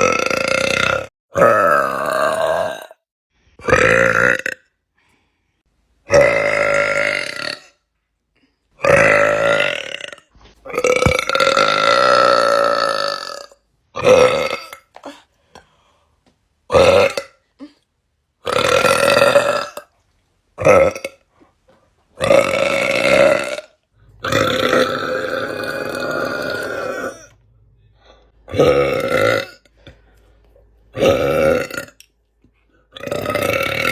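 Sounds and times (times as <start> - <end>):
person burping loudly: 0.0 - 4.8, 6.1 - 7.8, 8.8 - 15.2, 16.7 - 17.8, 18.4 - 19.9, 20.6 - 21.3, 22.2 - 27.4, 28.5 - 29.8, 30.9 - 32.0, 32.9 - 33.9.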